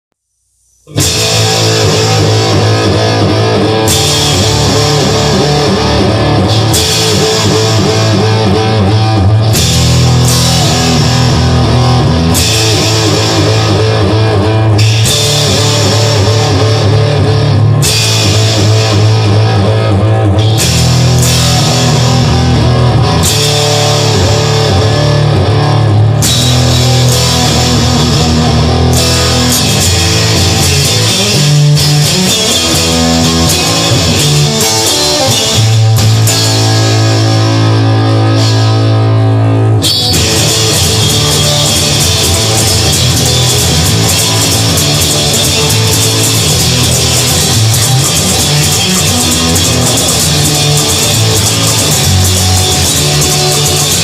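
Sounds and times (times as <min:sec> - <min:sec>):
instrumental rock music: 0:00.8 - 0:54.0.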